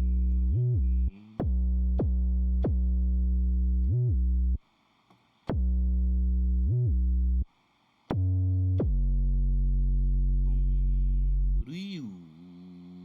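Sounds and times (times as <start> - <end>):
deep synth bass sliding: 0.0 - 4.6, 8.2 - 11.6.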